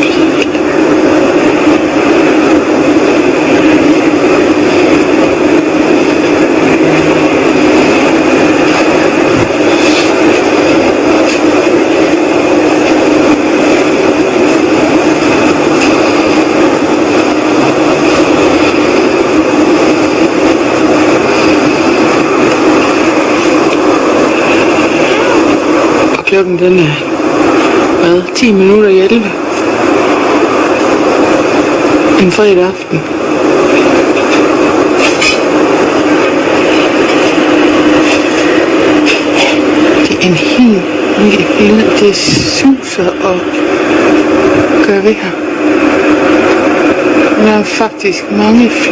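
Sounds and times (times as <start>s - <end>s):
loud whooshing rumble: 0.0s - 47.5s
woman talking: 26.2s - 27.1s, 27.9s - 29.4s, 32.1s - 33.1s, 40.0s - 43.6s, 44.8s - 45.4s, 47.4s - 48.9s.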